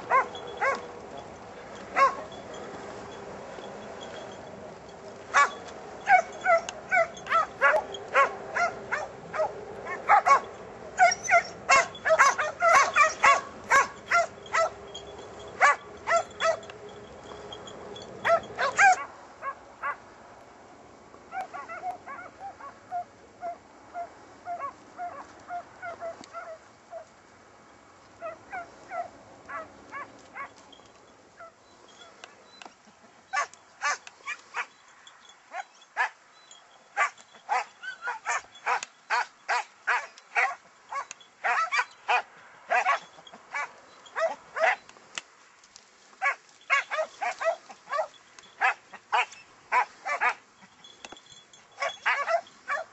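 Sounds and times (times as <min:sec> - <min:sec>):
hounds baying: 0:00.0 - 0:04.4, 0:05.3 - 0:20.0, 0:33.3 - 0:44.9, 0:46.2 - 0:52.9.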